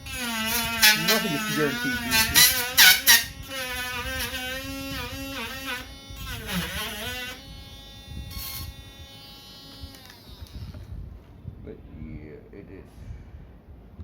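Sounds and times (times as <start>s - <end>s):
rotary tool sanding plastic: 0.0s - 10.8s.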